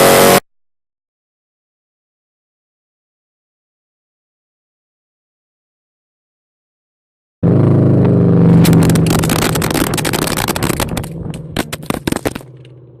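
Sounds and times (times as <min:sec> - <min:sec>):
loud car exhaust revving: 0:00.0 - 0:00.4, 0:07.4 - 0:13.0
exhaust crackles and pops: 0:08.0 - 0:13.0.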